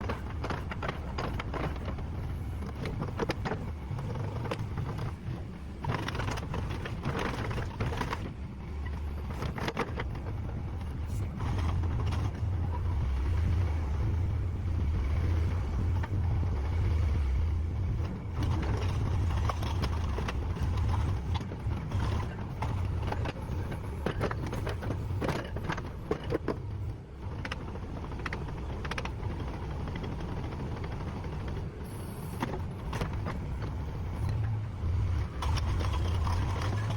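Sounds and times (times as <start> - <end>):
excavator diesel engine running: 0.0 - 36.9.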